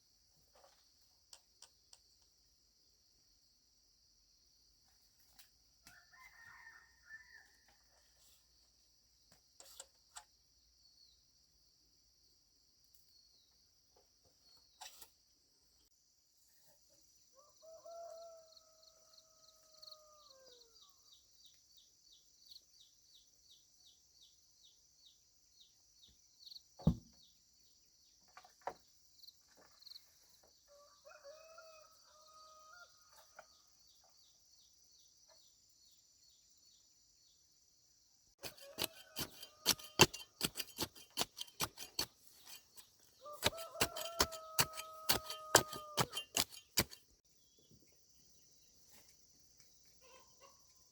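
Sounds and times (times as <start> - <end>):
rooster crowing: 5.9 - 7.6, 17.4 - 20.7, 30.7 - 33.2, 38.4 - 40.3, 43.2 - 46.9
thump: 26.8 - 27.2.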